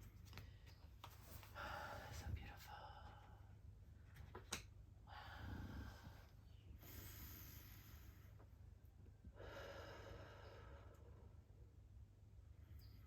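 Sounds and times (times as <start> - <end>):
person breathing slowly: 5.1 - 8.4, 9.3 - 11.4.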